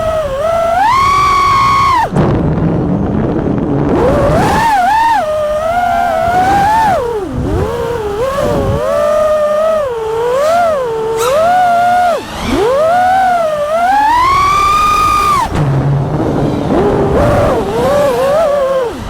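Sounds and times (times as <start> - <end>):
drone motors whining: 0.0 - 19.0.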